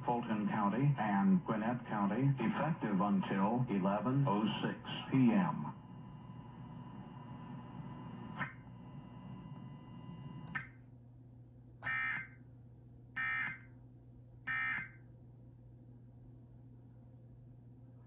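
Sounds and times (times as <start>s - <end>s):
thin steady whines: 0.0s - 10.8s
receiver hiss and hum: 0.0s - 18.0s
click: 10.4s - 10.8s.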